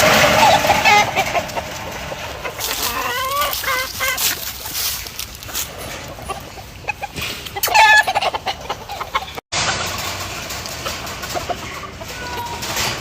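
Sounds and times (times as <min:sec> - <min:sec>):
chickens clucking: 0:00.0 - 0:13.0
loud sharp chicken call: 0:07.6 - 0:09.3.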